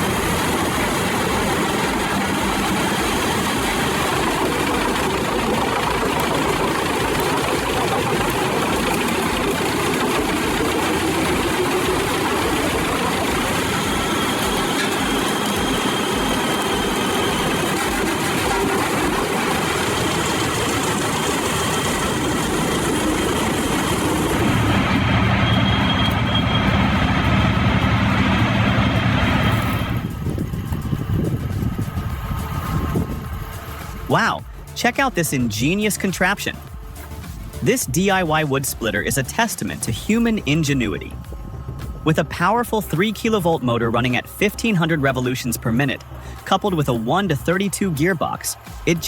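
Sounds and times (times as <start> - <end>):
wood chipper running: 0.0 - 34.8.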